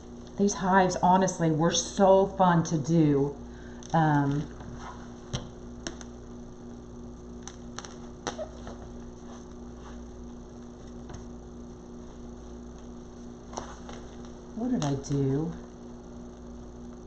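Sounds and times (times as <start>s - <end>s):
electrical hum: 0.0s - 17.0s.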